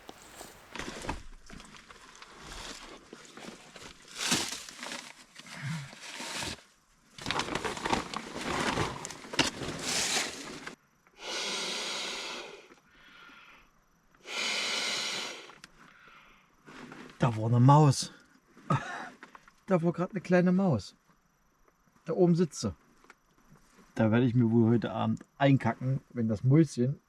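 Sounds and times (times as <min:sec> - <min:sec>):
material rustling and scraping: 0:00.0 - 0:01.2
breathy hisses: 0:11.2 - 0:16.5.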